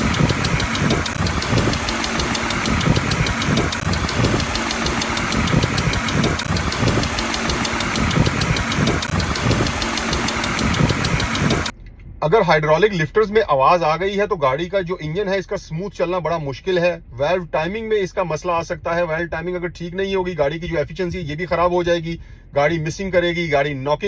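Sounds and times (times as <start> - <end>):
car engine idling with ticking: 0.0 - 12.0.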